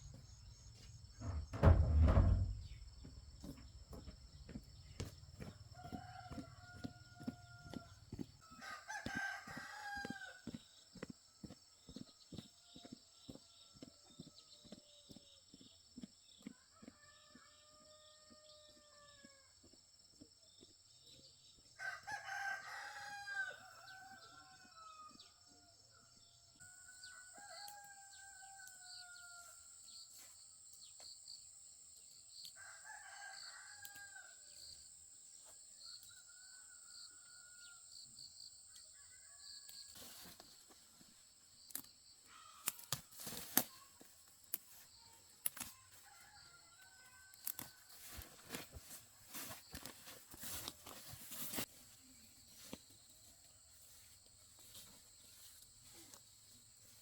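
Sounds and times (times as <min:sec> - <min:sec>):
sharp knocks and clicks: 0:01.2 - 0:03.7
roosters crowing: 0:05.4 - 0:10.6, 0:21.8 - 0:25.4, 0:26.7 - 0:29.6, 0:32.6 - 0:34.4.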